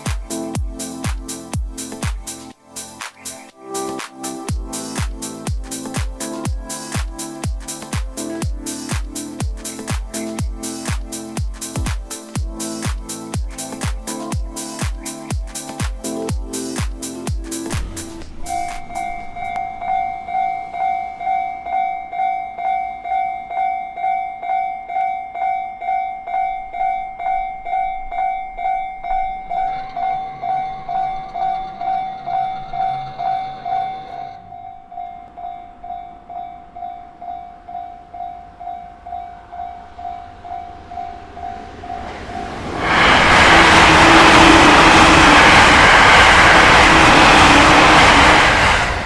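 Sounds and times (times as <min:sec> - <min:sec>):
train rushing noise: 0:00.0 - 0:21.7, 0:35.4 - 0:49.0.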